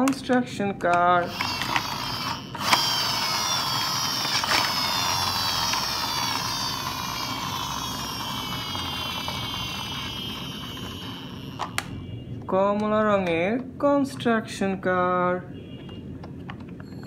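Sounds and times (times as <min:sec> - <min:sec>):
toy truck gears whirring: 0:00.9 - 0:12.0, 0:16.8 - 0:17.0.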